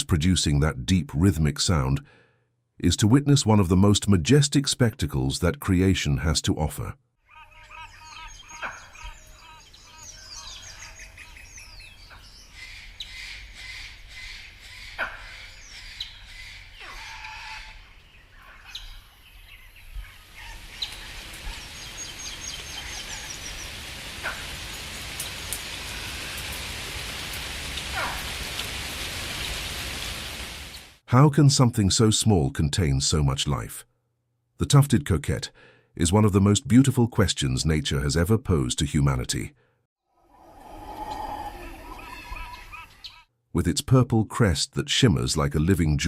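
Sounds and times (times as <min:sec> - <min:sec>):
wild birds calling: 0:07.2 - 0:30.9, 0:40.2 - 0:43.3.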